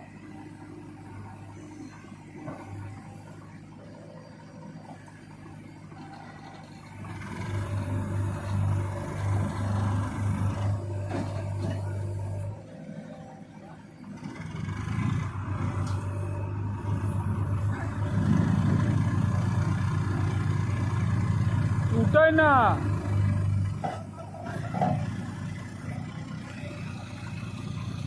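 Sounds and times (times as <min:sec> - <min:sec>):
heavy diesel engine revving: 0:06.4 - 0:28.0.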